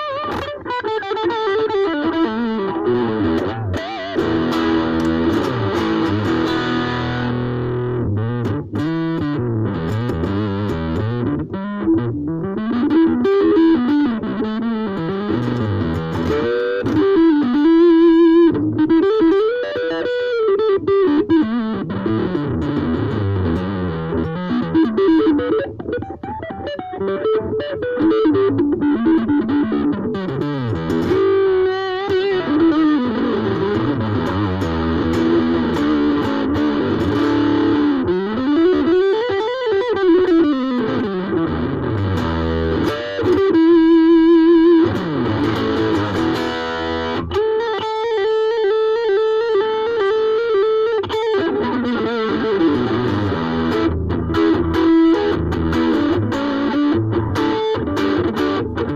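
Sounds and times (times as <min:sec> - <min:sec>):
distorted electric guitar lead: 0:00.0 - 0:58.9.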